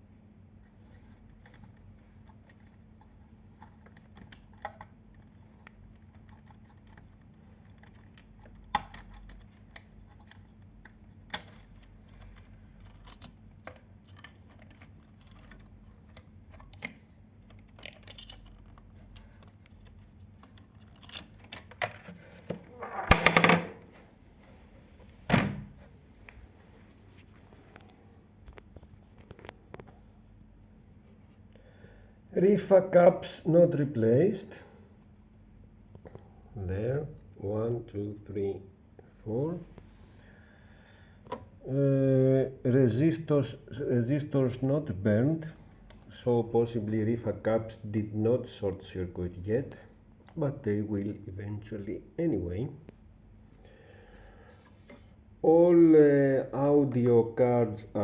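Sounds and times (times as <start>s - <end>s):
hands and tools clicking on casing: 1.4s - 22.6s.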